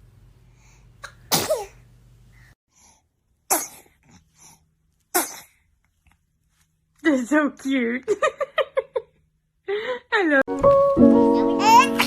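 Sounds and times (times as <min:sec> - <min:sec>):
baby sneezing: 0:01.0 - 0:01.8, 0:03.5 - 0:04.0, 0:05.1 - 0:05.6.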